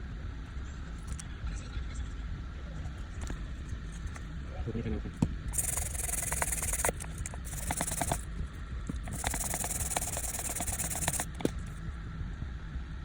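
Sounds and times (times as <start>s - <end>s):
hand tools clicking and scraping: 5.5s - 8.3s, 8.9s - 11.7s.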